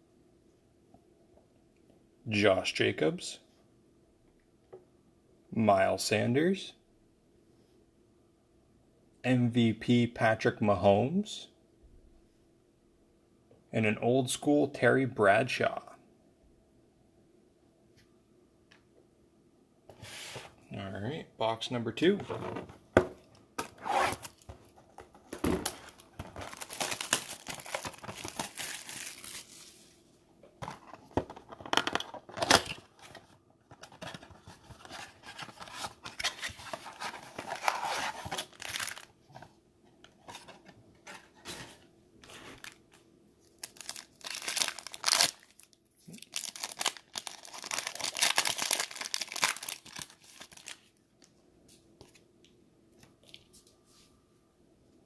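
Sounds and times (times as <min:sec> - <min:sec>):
wrappers tearing and crinkling: 0:25.6 - 0:29.9, 0:35.8 - 0:39.1, 0:43.5 - 0:50.9.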